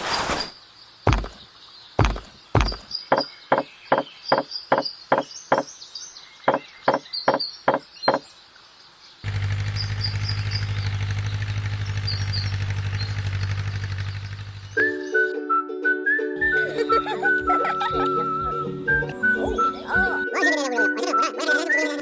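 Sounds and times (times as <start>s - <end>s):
faint birds chirping: 0.0s - 15.3s, 16.4s - 22.0s
sharp knocks: 1.1s - 1.4s, 2.0s - 5.7s
small motor pulsing hum: 9.2s - 14.8s.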